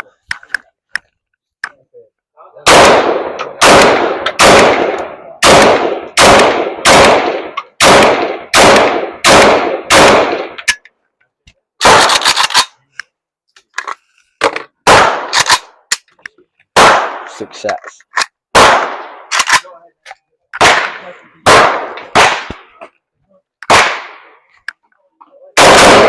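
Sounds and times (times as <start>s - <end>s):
gunshots: 2.6s - 10.8s, 11.8s - 12.7s, 14.8s - 15.8s, 16.7s - 17.7s, 18.5s - 19.8s, 20.6s - 22.9s, 23.6s - 24.4s, 25.6s - 26.0s.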